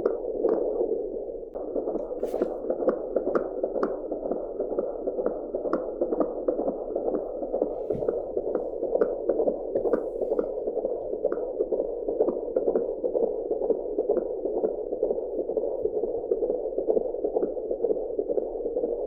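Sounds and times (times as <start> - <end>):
fetal heartbeat pulsing: 0.0 - 19.0.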